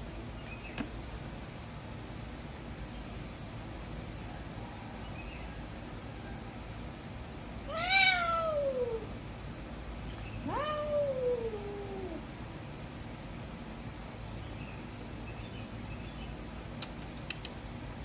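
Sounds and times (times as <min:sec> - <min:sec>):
cat meowing: 0:07.7 - 0:09.1, 0:10.4 - 0:12.2.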